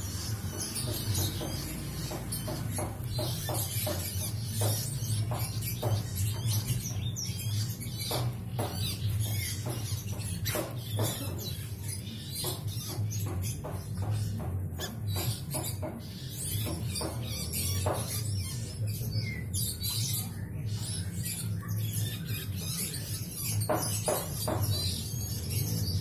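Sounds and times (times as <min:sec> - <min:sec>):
bird squeaky chirps: 0:00.0 - 0:26.0.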